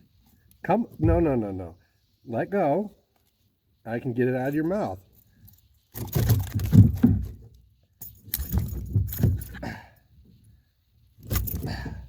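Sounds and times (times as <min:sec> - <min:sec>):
hook jangling: 0:05.1 - 0:07.4, 0:08.0 - 0:09.7, 0:11.2 - 0:12.0.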